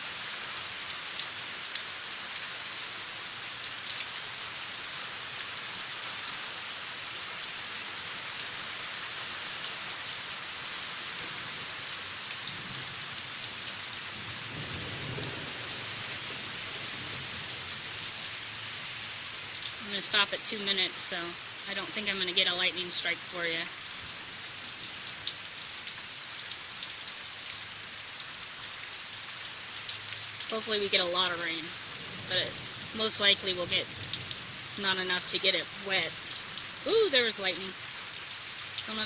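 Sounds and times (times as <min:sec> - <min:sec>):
hard rain falling: 0:00.0 - 0:39.0
distant thunder rumble: 0:14.2 - 0:18.7.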